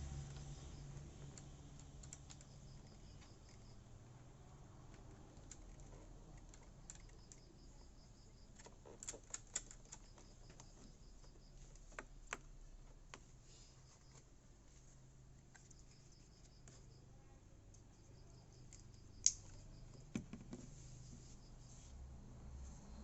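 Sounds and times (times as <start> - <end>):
faint low hum: 0.0 - 23.0
small hard parts clicking: 0.2 - 12.5.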